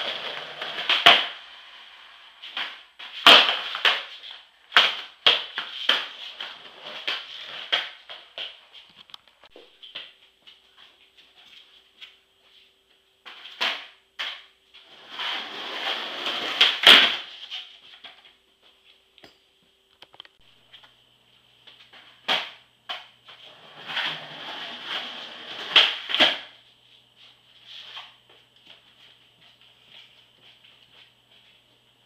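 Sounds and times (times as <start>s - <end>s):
skateboard clacking on floor: 0.0s - 8.6s, 13.3s - 17.3s
skateboard wheels rolling: 0.0s - 8.7s, 14.8s - 17.4s, 23.4s - 26.5s.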